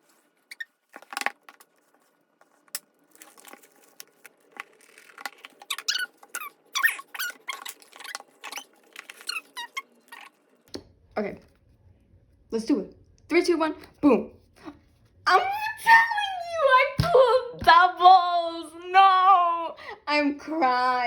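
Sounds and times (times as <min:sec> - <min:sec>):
plastic packaging crinkling: 0:00.0 - 0:10.3.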